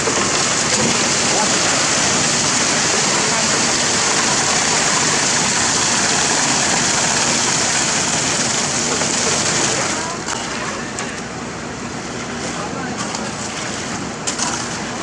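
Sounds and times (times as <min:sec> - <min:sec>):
construction machinery engine hissing: 0:00.0 - 0:10.2.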